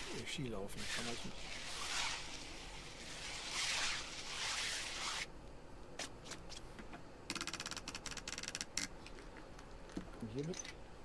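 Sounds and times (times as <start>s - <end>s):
skis swishing over snow: 0.0s - 5.3s
sharp clicks: 7.3s - 8.9s.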